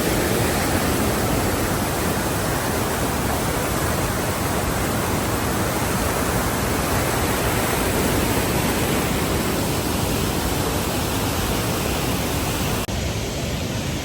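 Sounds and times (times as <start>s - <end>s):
waterfall roaring: 0.0s - 14.0s.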